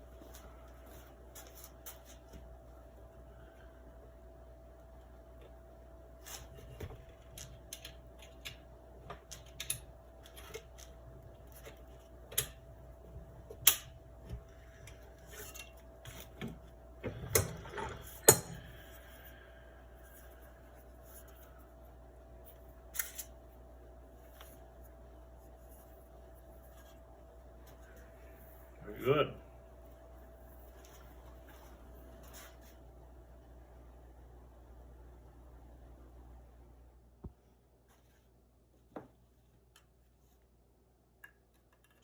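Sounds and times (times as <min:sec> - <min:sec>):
faint steady hum: 0:00.0 - 0:42.0.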